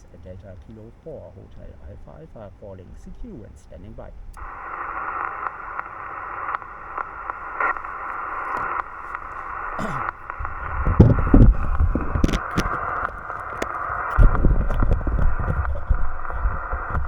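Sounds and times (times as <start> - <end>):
low rumbles: 0.0 - 17.0
radio speaker static hiss: 0.0 - 17.0.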